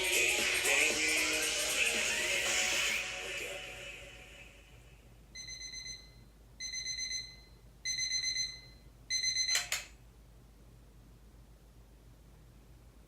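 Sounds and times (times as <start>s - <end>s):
music: 0.0s - 4.7s
alarm clock beeping: 5.4s - 9.8s.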